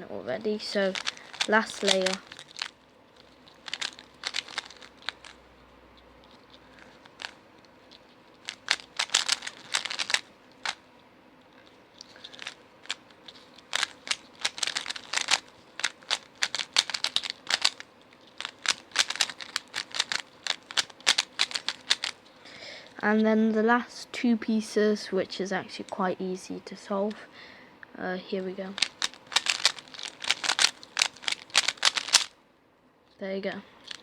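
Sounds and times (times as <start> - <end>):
plastic puzzle cube clicking: 0.7 - 5.4, 6.3 - 10.8, 12.0 - 22.2, 28.8 - 32.3.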